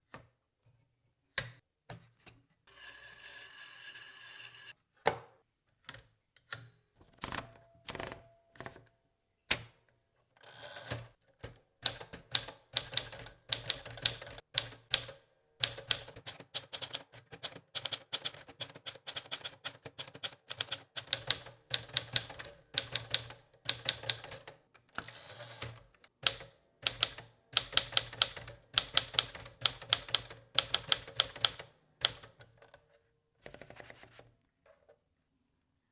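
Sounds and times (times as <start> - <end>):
typewriter keystrikes: 11.9 - 24.5, 25.6 - 32.4.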